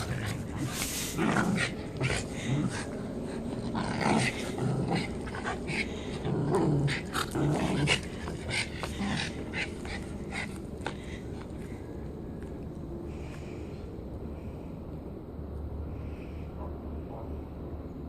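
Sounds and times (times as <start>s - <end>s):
puppy growling: 0.0s - 11.8s.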